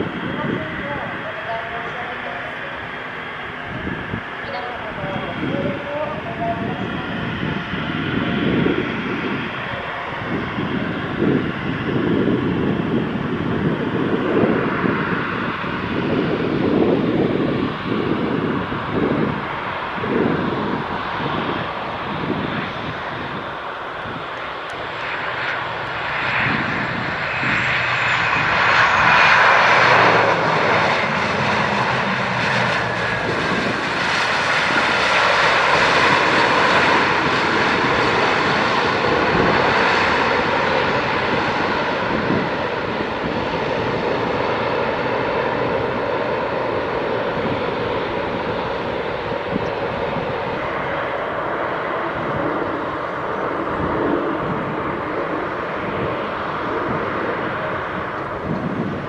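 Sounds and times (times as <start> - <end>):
jet engines passing: 0.0 - 59.0.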